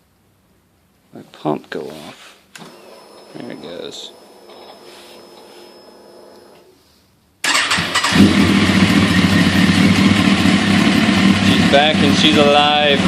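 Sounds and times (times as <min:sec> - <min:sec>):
motorcycle engine starting and idling: 0:07.4 - 0:13.0
fuel pump humming: 0:09.3 - 0:13.0.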